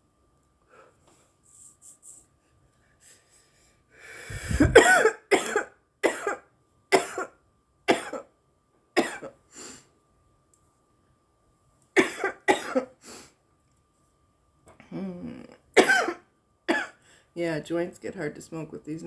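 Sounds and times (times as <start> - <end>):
woman coughing: 4.5 - 7.3, 7.9 - 8.3, 9.0 - 9.4, 12.0 - 12.9, 15.8 - 17.0.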